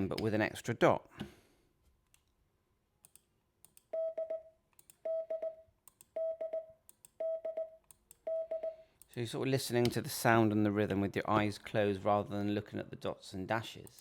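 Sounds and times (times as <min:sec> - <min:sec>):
morse code beeps: 0:04.0 - 0:05.6, 0:06.2 - 0:08.8.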